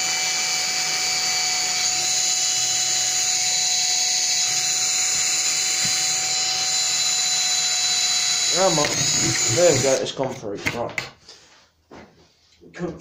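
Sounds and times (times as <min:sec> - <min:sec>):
electric drill whining through metal: 0:00.0 - 0:10.0.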